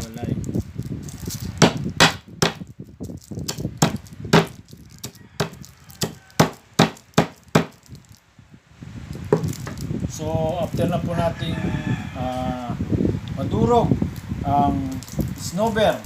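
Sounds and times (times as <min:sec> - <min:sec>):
sharp knocks pounding candies: 0:01.6 - 0:02.7, 0:03.4 - 0:07.9.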